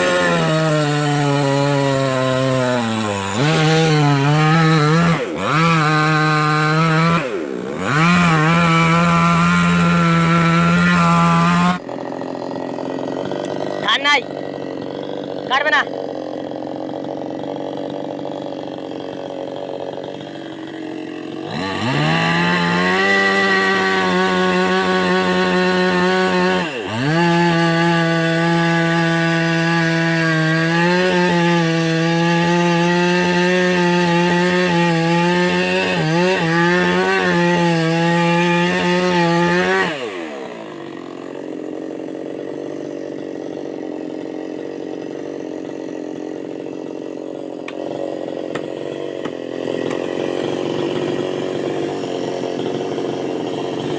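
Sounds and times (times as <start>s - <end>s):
chainsaw cutting wood: 0.0s - 53.9s
people talking: 13.8s - 14.2s, 15.5s - 15.9s.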